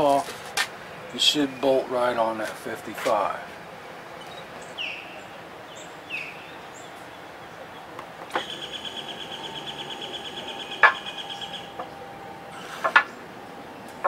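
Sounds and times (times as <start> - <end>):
pump motor whining: 8.0 - 14.0.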